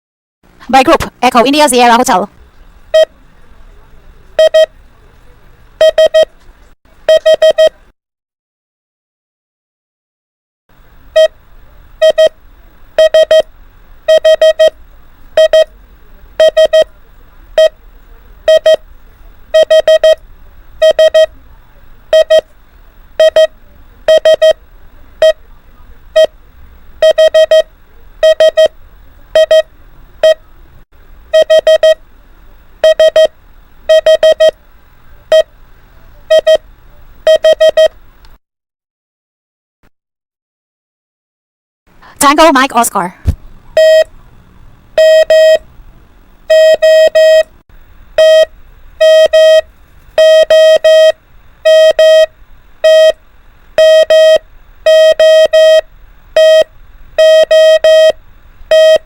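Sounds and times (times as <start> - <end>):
faint low hum: 0.6 - 7.8, 10.8 - 38.2
morse code beeps: 2.9 - 3.1, 4.4 - 4.7, 5.8 - 6.3, 7.1 - 7.7, 11.2 - 11.4, 12.0 - 12.4, 13.0 - 13.5, 14.1 - 14.8, 15.4 - 15.7, 16.4 - 16.9, 17.6 - 17.8, 18.5 - 18.9, 19.5 - 20.2, 20.8 - 21.3, 22.1 - 22.5, 23.2 - 24.6, 25.2 - 25.4, 26.1 - 26.4, 27.0 - 28.8, 29.4 - 30.4, 31.3 - 32.0, 32.8 - 33.3, 33.9 - 34.6, 35.3 - 35.5, 36.3 - 36.6, 37.3 - 38.0, 43.8 - 44.1, 45.0 - 45.6, 46.5 - 47.5, 48.2 - 53.2, 53.8 - 59.0.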